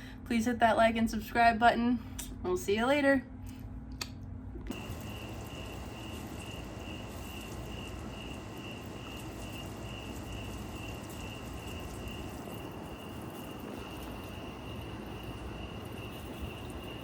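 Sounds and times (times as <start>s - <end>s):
cricket chirping: 4.8s - 17.0s.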